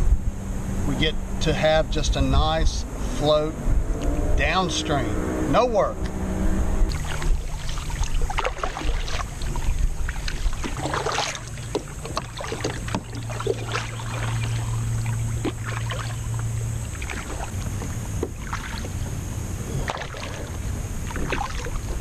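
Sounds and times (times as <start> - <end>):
low steady hum: 0.0 - 22.0
water splashing around kayak: 6.8 - 22.0.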